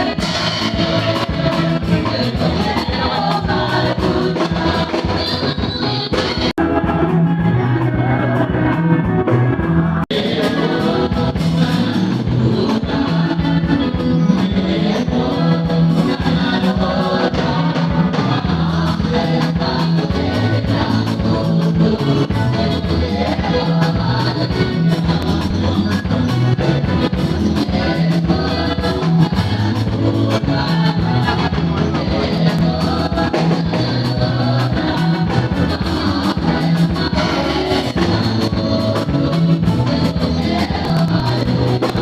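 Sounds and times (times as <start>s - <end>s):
music with singing and beat: 0.0s - 42.0s.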